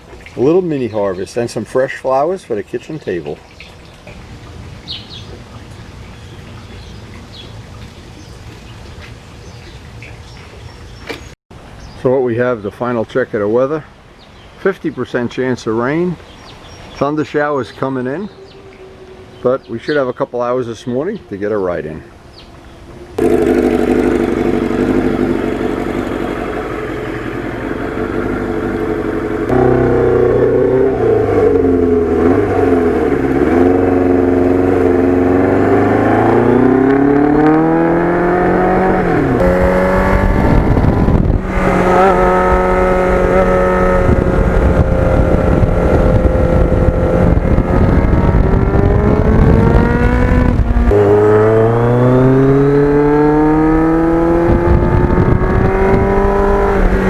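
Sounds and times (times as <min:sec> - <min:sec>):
motorcycle engine pulling through gears: 0:23.2 - 0:57.0
wind rush on microphone: 0:30.4 - 0:52.0, 0:52.8 - 0:57.0.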